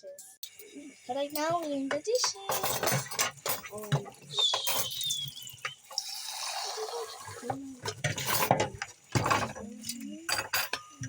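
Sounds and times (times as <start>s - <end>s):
dishes clinking: 1.3s - 6.0s, 7.3s - 11.0s
high squeak: 4.3s - 5.5s.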